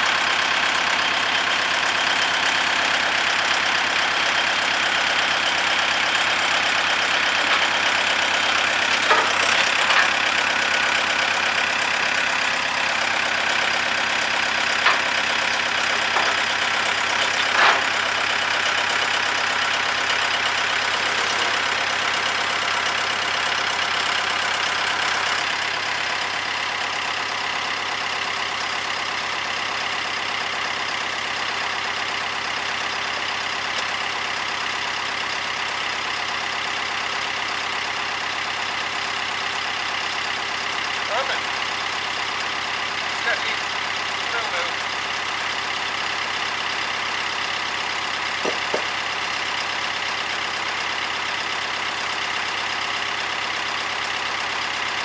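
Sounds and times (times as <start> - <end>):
diesel engine running: 0.0 - 55.0
short knocks: 48.4 - 48.9.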